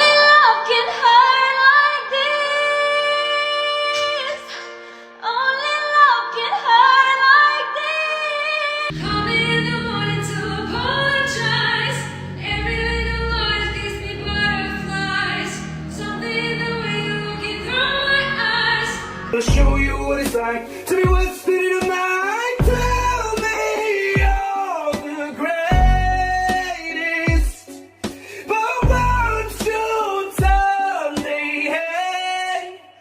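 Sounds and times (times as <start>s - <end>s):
woman singing: 0.0s - 27.7s
sustained chords: 8.9s - 21.3s, 22.6s - 24.4s
bass and drums: 19.4s - 22.0s, 22.6s - 24.4s, 25.7s - 28.2s, 28.8s - 30.7s.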